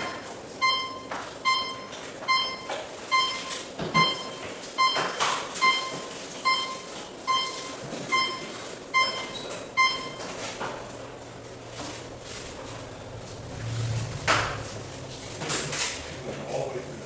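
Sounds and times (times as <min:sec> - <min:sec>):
room noise: 0:00.0 - 0:17.0
high electronic beep: 0:00.6 - 0:10.2.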